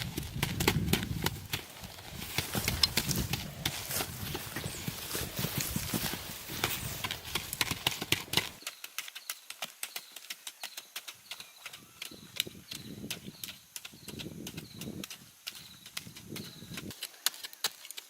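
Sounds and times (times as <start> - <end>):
clicks and knocks of hard objects: 13.8 - 18.0.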